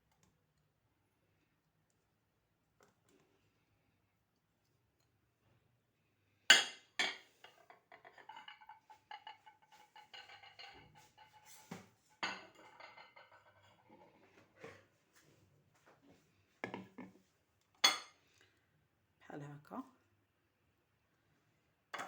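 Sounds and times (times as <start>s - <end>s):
clinking and rattling in metal pot: 7.0s - 11.6s.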